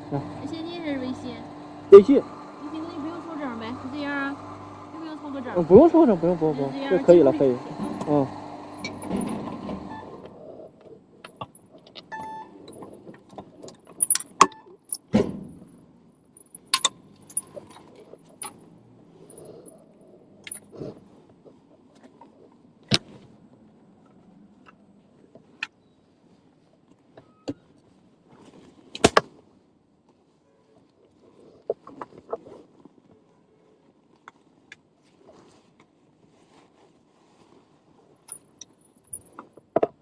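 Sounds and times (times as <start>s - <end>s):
keys jangling: 13.9s - 14.3s
low rustle: 15.5s - 39.6s
sharp metallic clicks and knocks: 16.4s - 18.6s.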